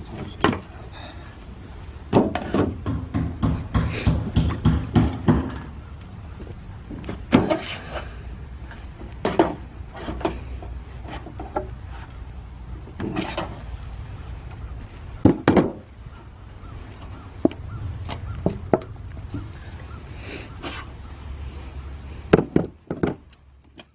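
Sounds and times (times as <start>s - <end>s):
scraping and rubbing noises: 6.4s - 12.2s, 12.8s - 15.2s, 17.0s - 22.3s.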